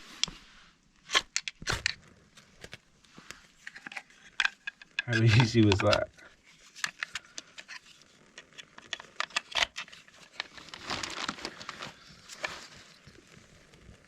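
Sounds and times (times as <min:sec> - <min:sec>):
campfire crackling and popping: 0:01.0 - 0:03.4.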